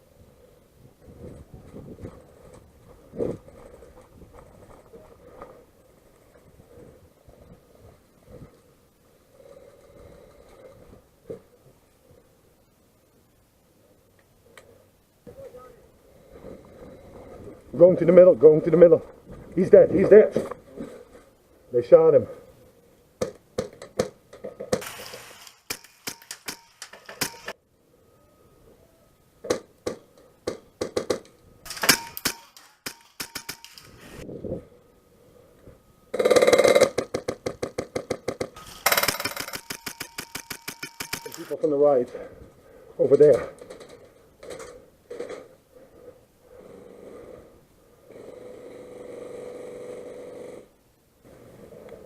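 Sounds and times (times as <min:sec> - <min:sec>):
airsoft guns firing: 0:24.7 - 0:27.6, 0:29.5 - 0:34.2, 0:36.2 - 0:41.6.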